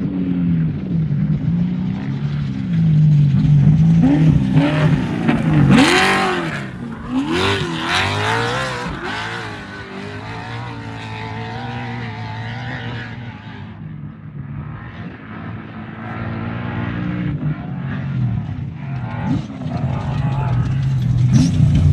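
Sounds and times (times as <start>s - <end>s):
race truck engine revving: 2.6s - 13.6s, 15.3s - 21.9s.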